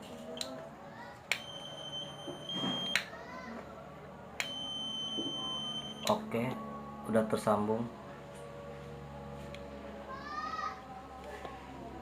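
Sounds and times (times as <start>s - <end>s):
continuity tester beeping: 1.3s - 3.1s, 4.4s - 6.2s
light switch clicking: 4.4s - 4.6s.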